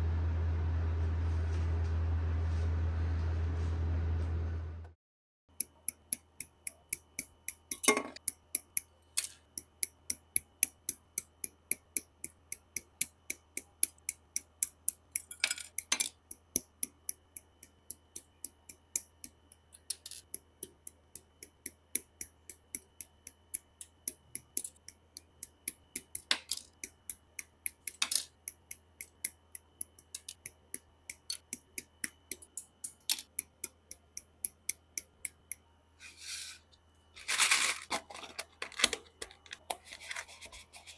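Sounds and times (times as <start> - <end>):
plastic model parts clicking: 18.2 - 20.4, 29.2 - 33.8, 37.5 - 40.2.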